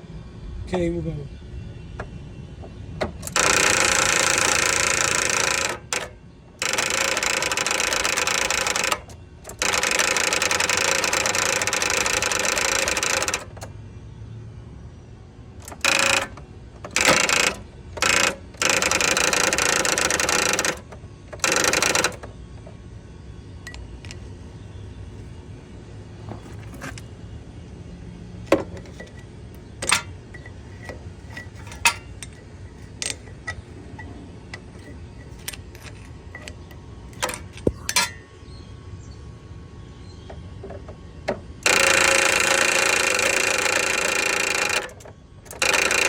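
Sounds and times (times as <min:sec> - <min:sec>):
starter motor cranking: 0:03.1 - 0:13.7, 0:15.6 - 0:22.4, 0:41.6 - 0:46.0.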